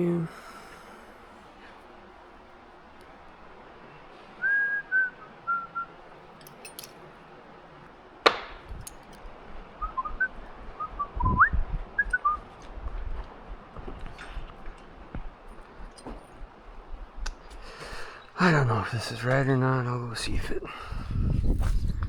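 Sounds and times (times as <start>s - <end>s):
person whistling: 4.4s - 5.9s, 9.8s - 12.4s
metal clank: 6.4s - 7.0s
dull knocks: 8.3s - 8.7s.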